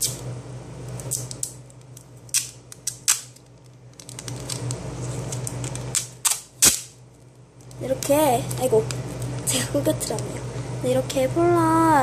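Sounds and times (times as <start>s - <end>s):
electric fan humming: 0.0s - 12.0s
plastic wrapping crinkling: 3.2s - 6.2s.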